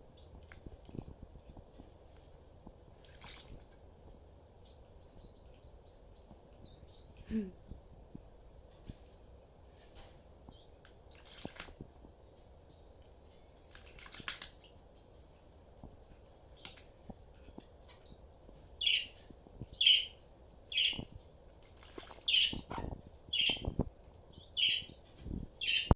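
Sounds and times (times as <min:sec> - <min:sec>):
parrot sharp calls: 0:22.3 - 0:23.7.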